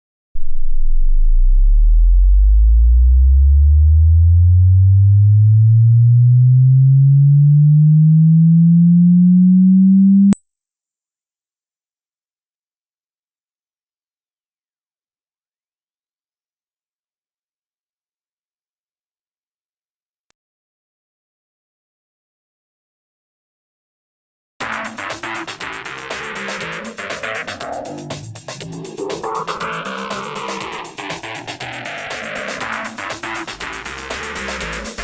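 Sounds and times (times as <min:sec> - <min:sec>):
sine wave tone sweeping upward: 0:00.4 - 0:19.1.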